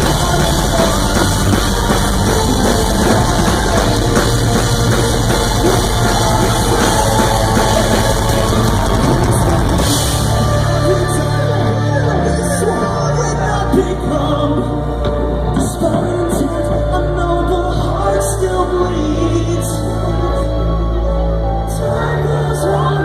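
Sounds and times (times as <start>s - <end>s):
fast drumming: 0.0s - 12.0s
distorted guitars: 0.0s - 20.3s
metalcore band playing live: 0.0s - 23.0s
person singing: 0.0s - 23.0s.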